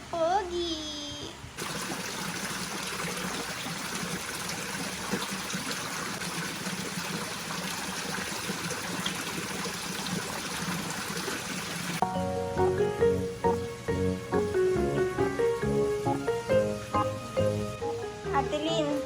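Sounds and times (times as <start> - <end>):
water rushing: 1.6 - 12.0.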